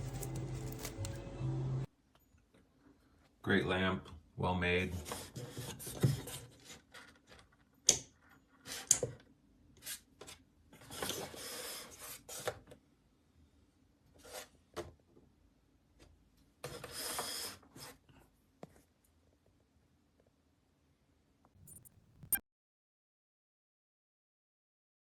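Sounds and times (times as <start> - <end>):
handling rubbing and scraping: 0.0 - 1.2, 21.6 - 22.4
sharp clicks: 21.6 - 22.4.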